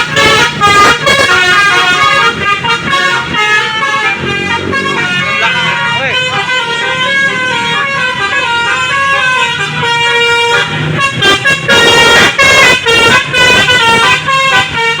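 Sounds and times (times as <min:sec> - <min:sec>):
musical bus horn tune: 0:00.0 - 0:15.0.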